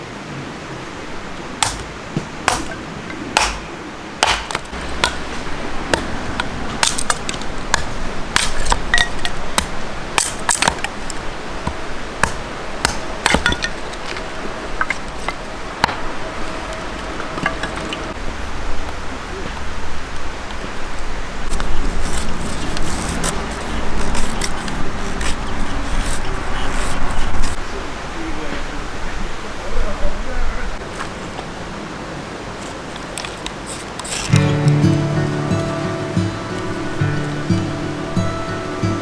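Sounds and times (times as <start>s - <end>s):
hard objects clicking and knocking: 1.6s - 16.0s.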